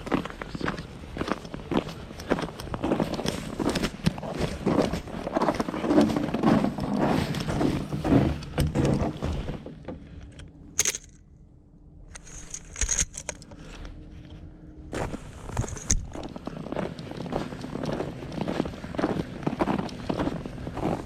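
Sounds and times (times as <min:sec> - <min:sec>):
footsteps: 0:00.0 - 0:11.2, 0:12.1 - 0:21.0
rustling handling noise: 0:12.1 - 0:16.3.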